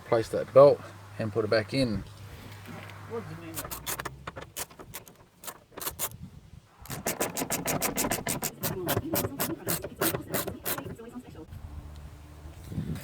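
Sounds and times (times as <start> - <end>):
belt rubbing pulled through: 2.2 - 11.4
seat belt clicking and rattling: 3.5 - 6.2, 6.8 - 11.5.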